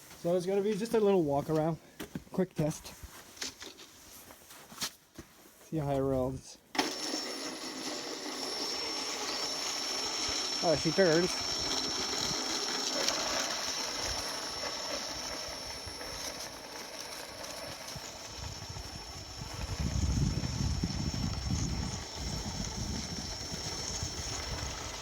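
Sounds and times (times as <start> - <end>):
electric motor high whine: 6.8 - 25.0.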